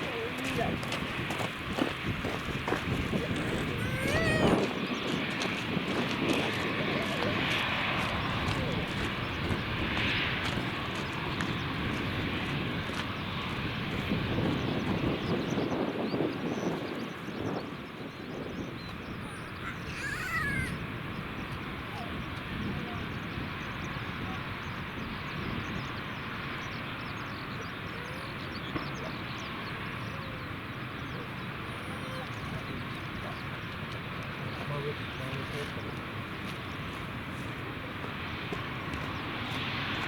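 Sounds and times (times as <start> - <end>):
airliner engine roar: 0.0 - 40.0
small birds chirping: 0.0 - 40.0
wind buffeting microphone: 0.0 - 40.0
distant rumble: 18.8 - 40.0.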